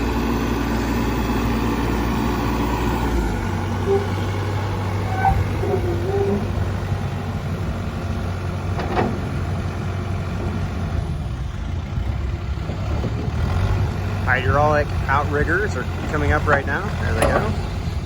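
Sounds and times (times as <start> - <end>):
diesel engine running: 0.0 - 18.0
short squeaky tones: 3.6 - 7.0.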